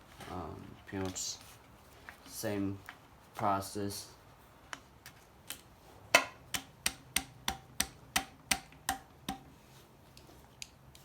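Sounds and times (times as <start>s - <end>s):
sharp metallic taps: 6.2s - 9.5s.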